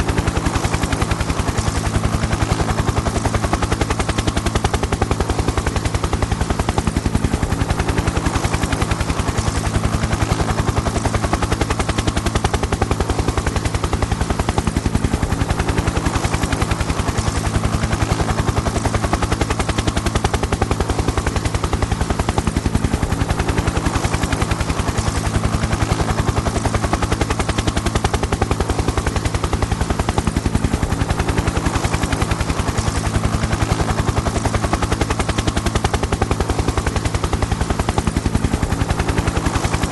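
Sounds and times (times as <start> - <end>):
helicopter rotor blades chopping: 0.0 - 39.9.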